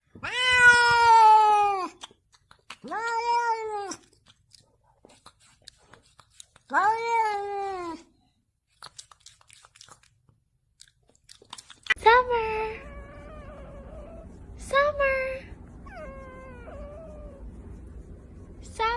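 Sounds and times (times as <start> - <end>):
cat meowing: 0.2 - 2.0.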